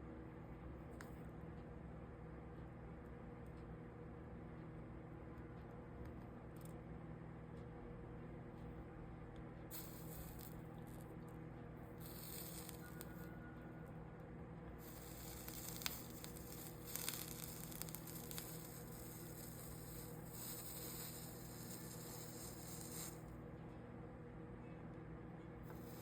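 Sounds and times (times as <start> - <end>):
steady electrical hum: 0.0 - 26.0
flux sizzling: 9.7 - 10.6, 12.0 - 13.2, 14.8 - 23.2.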